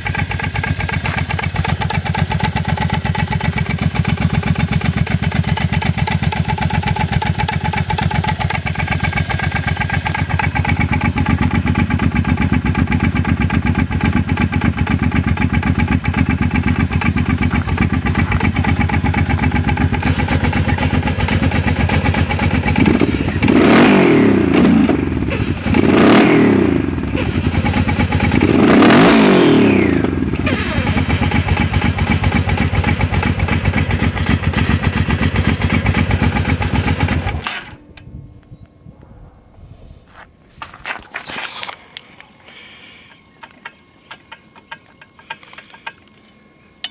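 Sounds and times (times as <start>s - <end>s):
motorcycle engine idling and revving: 0.0s - 37.8s, 43.1s - 46.9s.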